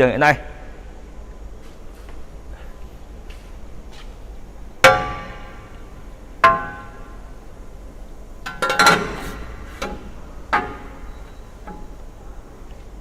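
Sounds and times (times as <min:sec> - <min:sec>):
metal clanks of aluminium profile: 0:04.8 - 0:07.4, 0:08.4 - 0:12.8.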